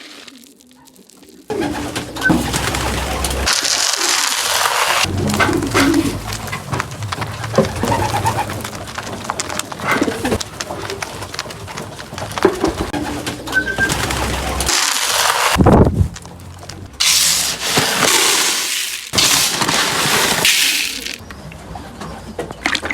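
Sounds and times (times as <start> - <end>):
birds rustling and clicking: 0.1 - 17.2
pigeons cooing: 5.0 - 14.7.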